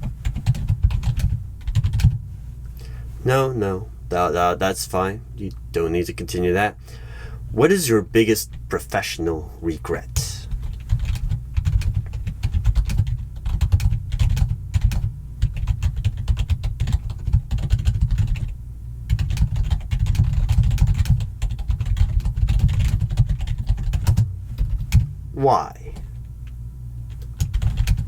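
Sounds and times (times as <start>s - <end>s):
typing on computer keyboard: 10.6s - 18.5s, 19.1s - 24.2s, 27.4s - 28.0s.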